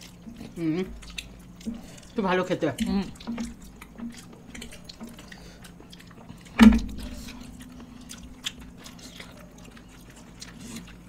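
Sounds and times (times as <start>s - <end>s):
low steady hum: 0.0s - 11.0s
people chewing food: 0.0s - 11.0s
thump: 6.6s - 7.2s.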